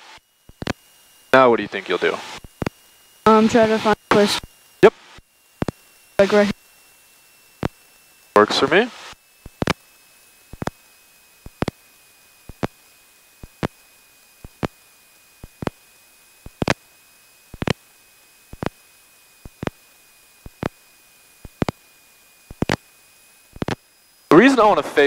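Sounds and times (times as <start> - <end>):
faint steady intercom hiss: 0.6 - 6.7, 7.6 - 16.9, 23.5 - 25.0
sharp clicks in pairs: 23.6 - 23.8.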